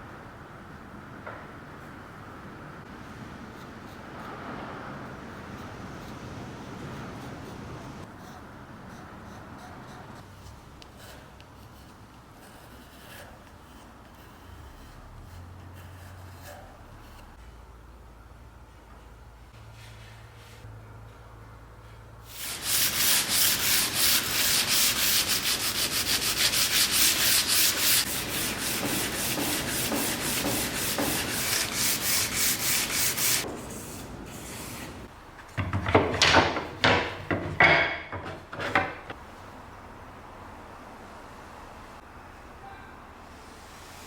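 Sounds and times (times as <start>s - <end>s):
sandpaper rubbing: 22.3s - 35.1s
irregular scrapes or knocks: 22.4s - 39.2s.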